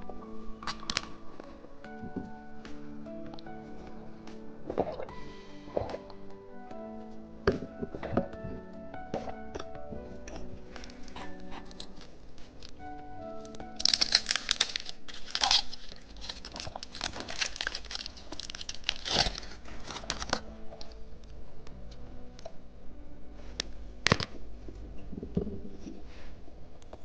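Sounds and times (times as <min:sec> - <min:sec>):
plastic wrapper tearing and crinkling: 0:00.6 - 0:01.2, 0:13.5 - 0:21.0.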